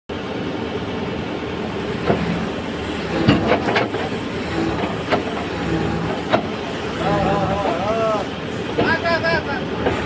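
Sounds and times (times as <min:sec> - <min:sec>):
diesel engine running: 0:00.8 - 0:10.0
sharp knocks and clanks: 0:01.8 - 0:07.8.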